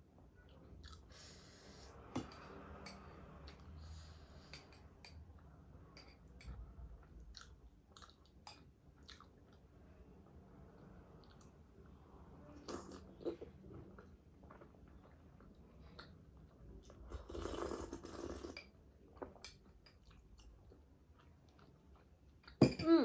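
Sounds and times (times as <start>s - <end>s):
person chewing soft sweets: 0.8s - 1.5s, 7.0s - 9.8s.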